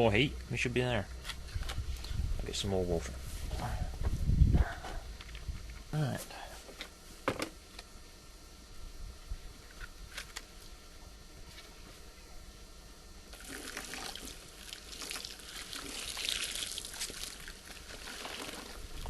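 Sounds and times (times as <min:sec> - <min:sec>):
water pouring into container: 0:13.3 - 0:19.0.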